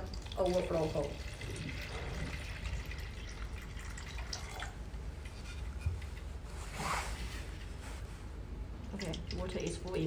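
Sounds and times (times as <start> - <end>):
water trickling and dripping: 0.0 - 5.4
low steady hum: 0.0 - 10.0.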